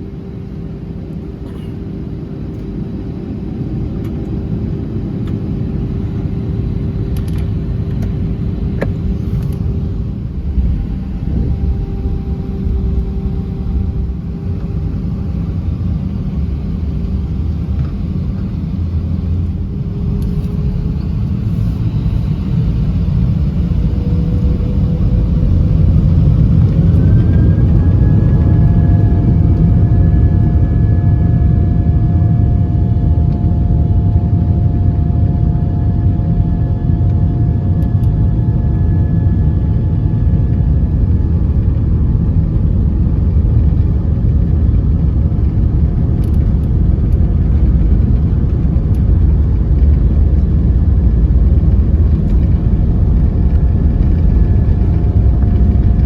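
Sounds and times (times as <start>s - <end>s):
jet engines spooling up: 1.0s - 34.1s.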